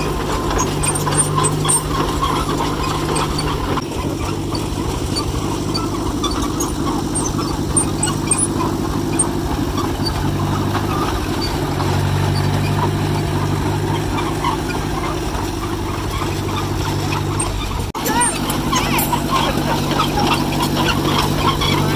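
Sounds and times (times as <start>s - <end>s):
dozer engine running: 0.0s - 21.9s.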